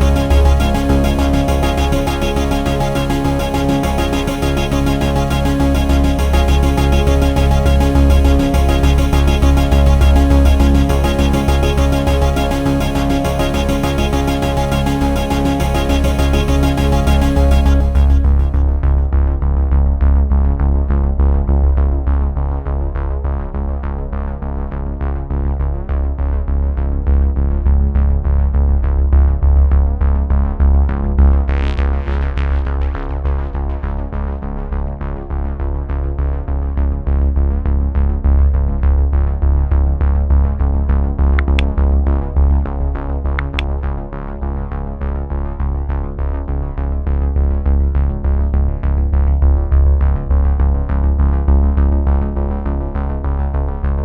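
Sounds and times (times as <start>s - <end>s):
electronic synthesizer music: 0.0s - 19.1s, 43.4s - 43.6s.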